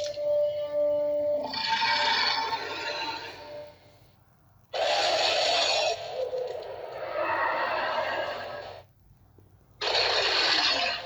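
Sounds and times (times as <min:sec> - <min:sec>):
monster roar rasping screech: 0:06.8 - 0:08.8.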